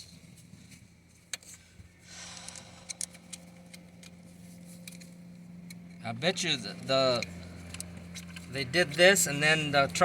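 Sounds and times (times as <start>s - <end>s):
low steady hum: 0.0s - 10.0s
hand tools clicking: 2.2s - 4.2s.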